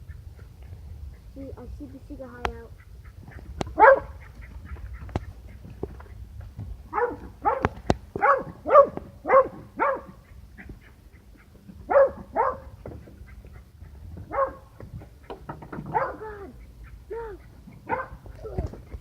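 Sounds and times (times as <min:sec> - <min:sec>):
small dog barking: 0:03.8 - 0:04.2, 0:06.9 - 0:10.2, 0:11.9 - 0:12.8, 0:14.3 - 0:14.7, 0:15.8 - 0:18.6.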